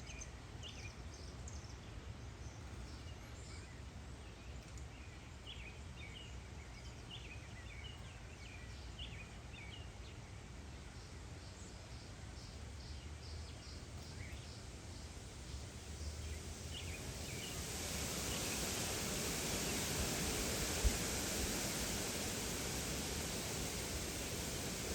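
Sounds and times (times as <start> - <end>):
small songbirds chirping: 0.0 - 24.9
low steady rumble: 13.4 - 24.9
broad rushing hiss: 14.6 - 24.9.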